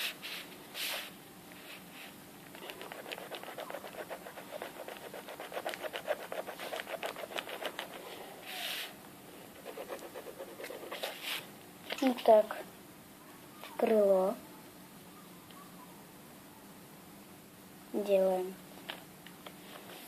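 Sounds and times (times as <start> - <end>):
drawing tool rubbing on paper: 2.6 - 8.1, 9.5 - 11.5
short breathy hiss: 8.4 - 9.0.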